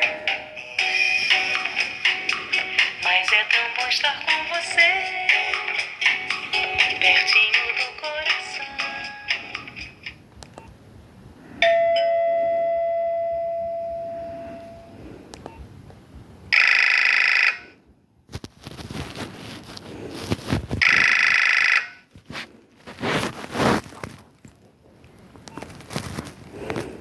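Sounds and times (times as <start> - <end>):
bell-like phone chime: 11.6 - 15.0.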